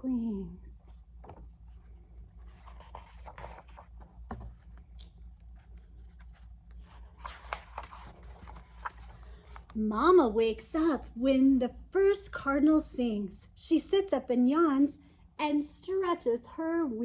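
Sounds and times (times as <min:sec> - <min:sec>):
book pages rustling: 0:00.9 - 0:09.8.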